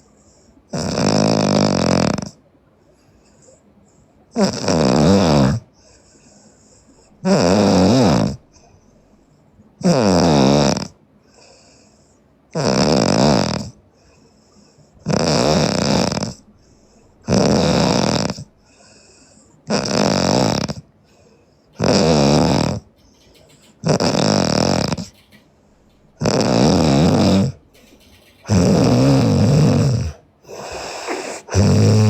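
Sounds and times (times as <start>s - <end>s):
woman snoring: 0.7s - 2.4s, 4.4s - 5.6s, 7.2s - 8.4s, 9.8s - 11.0s, 12.6s - 13.7s, 15.1s - 16.4s, 17.3s - 18.5s, 19.7s - 20.9s, 21.8s - 22.9s, 23.8s - 25.1s, 26.2s - 27.6s, 28.4s - 32.0s.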